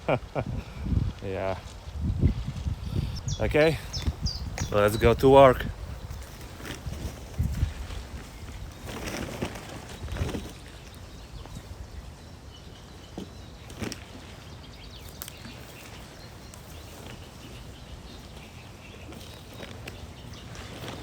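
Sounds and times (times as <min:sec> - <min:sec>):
faint bird chirps: 0:02.9 - 0:06.8.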